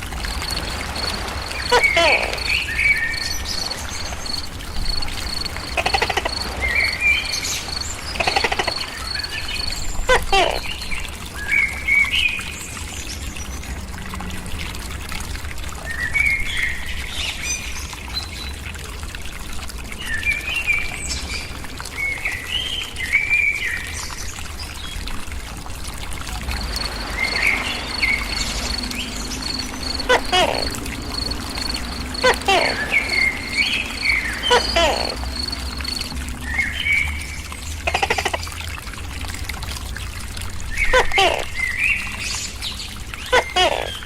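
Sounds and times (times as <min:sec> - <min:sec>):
small birds chirping: 0:26.7 - 0:37.2.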